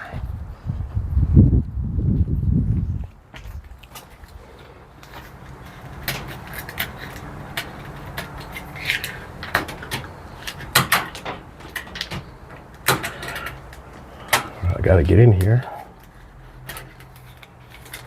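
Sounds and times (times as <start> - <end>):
low steady hum: 14.6 - 15.8.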